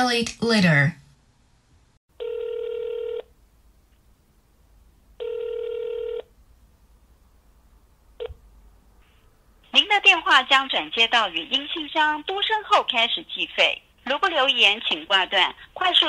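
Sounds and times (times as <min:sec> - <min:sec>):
telephone ringback tone: 0:02.2 - 0:03.3, 0:05.2 - 0:06.3.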